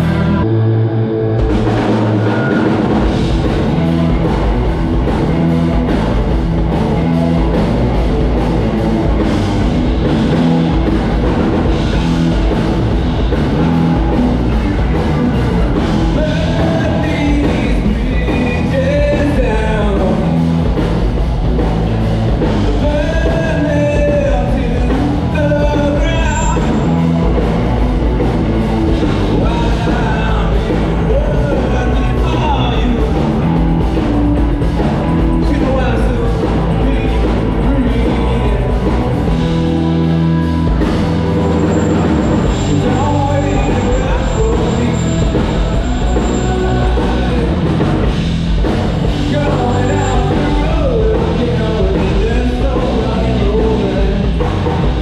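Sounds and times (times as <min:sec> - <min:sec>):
live rock band playing: 0:00.0 - 0:55.0
person singing: 0:15.9 - 0:20.4, 0:22.7 - 0:27.0, 0:29.3 - 0:33.6, 0:35.4 - 0:39.8, 0:40.7 - 0:48.0, 0:49.1 - 0:55.0.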